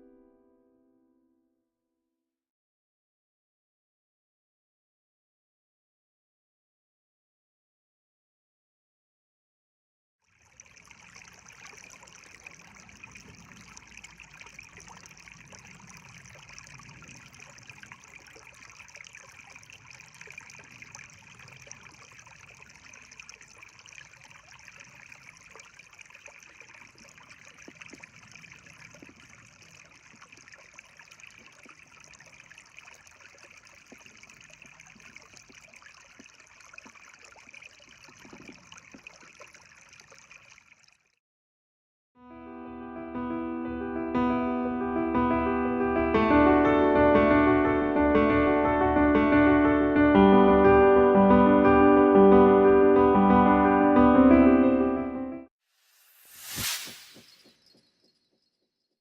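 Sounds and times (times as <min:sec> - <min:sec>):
creek water flowing over rocks: 0:10.3 - 0:41.1.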